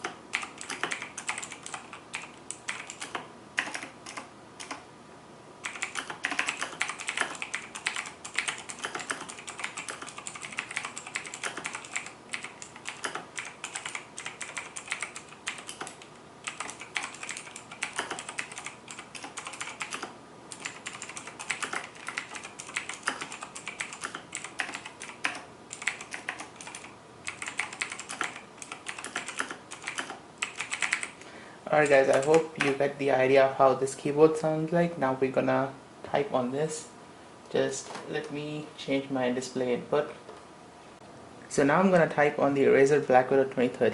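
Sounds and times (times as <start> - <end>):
mechanical keyboard typing: 0.0 - 4.8, 5.6 - 31.2, 31.8 - 32.8.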